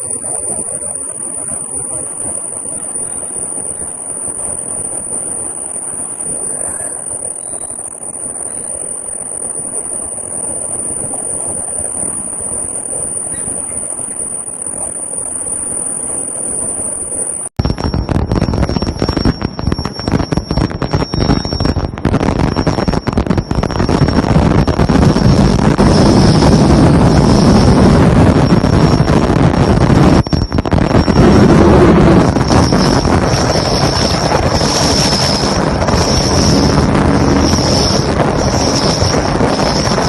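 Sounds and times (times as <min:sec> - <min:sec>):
machine clatter with high whine: 0:00.0 - 0:40.0
machine humming: 0:00.0 - 0:40.0.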